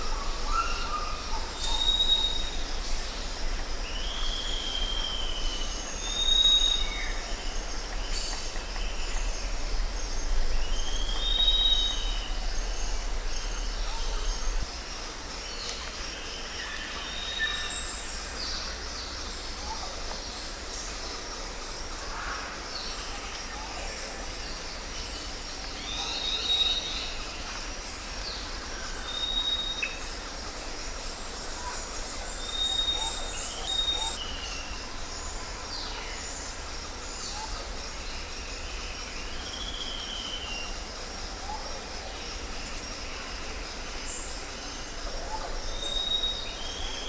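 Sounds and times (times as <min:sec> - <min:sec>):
insect chorus: 0:00.0 - 0:47.0
low rumble: 0:07.4 - 0:14.7.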